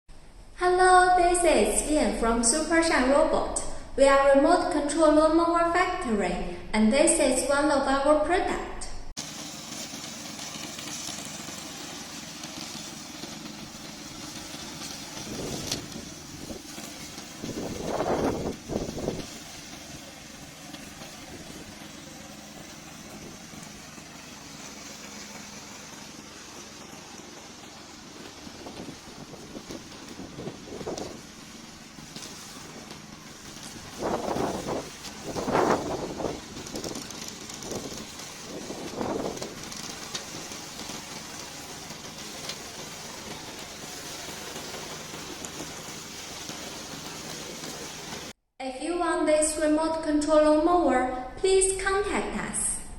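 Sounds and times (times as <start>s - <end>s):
lawn mower engine humming: 9.2s - 48.4s.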